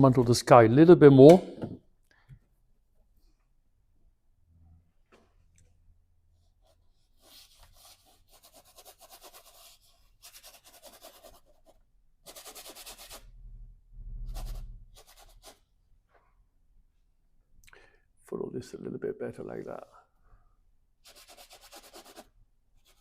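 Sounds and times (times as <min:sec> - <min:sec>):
brush scrubbing on canvas: 0:06.4 - 0:13.2, 0:21.0 - 0:23.0.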